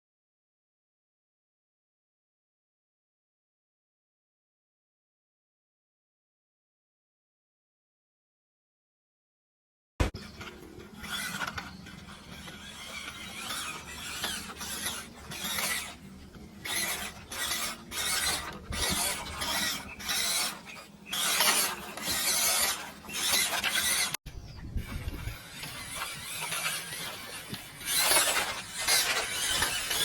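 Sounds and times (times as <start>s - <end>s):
toy car electric motor whirring: 10.1s - 30.0s.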